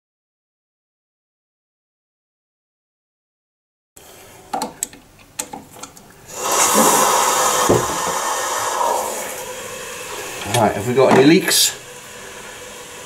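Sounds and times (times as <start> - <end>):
water rushing in toilet cistern: 6.3 - 13.0.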